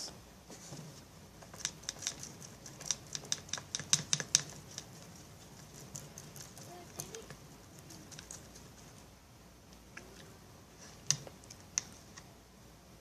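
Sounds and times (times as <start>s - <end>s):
spoon stirring glue in a bowl: 1.2s - 9.1s, 9.9s - 12.3s.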